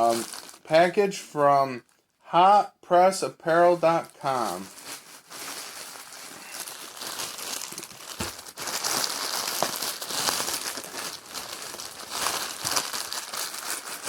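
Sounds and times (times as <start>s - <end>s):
packaging crinkling and tearing: 0.0s - 0.8s, 3.9s - 14.0s.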